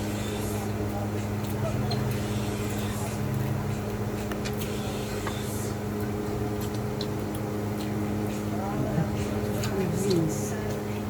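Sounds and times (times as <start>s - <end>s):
low motor hum: 0.0s - 11.0s
eating clicks and smacks: 6.0s - 8.5s.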